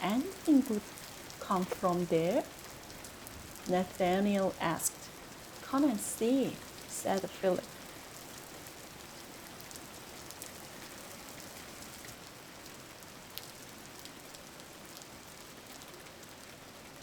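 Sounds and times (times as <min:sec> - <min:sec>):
raindrop ticks: 0:00.0 - 0:08.6, 0:12.0 - 0:15.1
steady rain hiss: 0:00.0 - 0:17.0.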